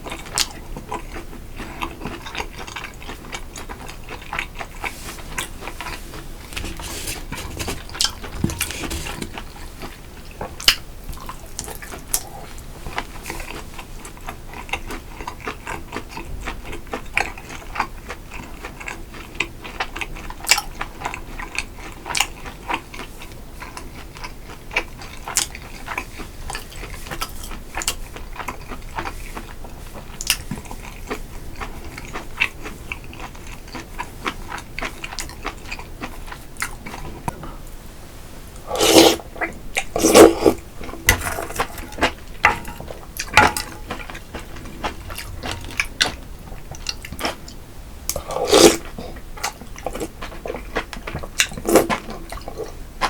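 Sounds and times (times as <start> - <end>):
chewing: 0.0 - 37.8, 38.6 - 52.9
utensils clinking on dishes: 39.9 - 44.2.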